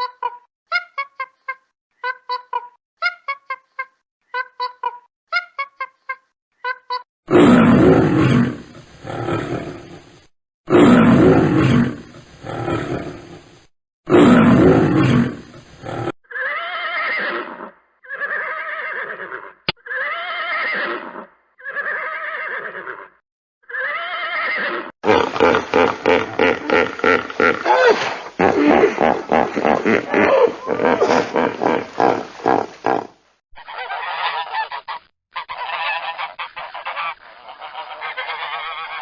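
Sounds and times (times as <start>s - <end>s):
lion roaring: 7.3s - 10.1s, 10.7s - 13.4s, 14.1s - 16.1s.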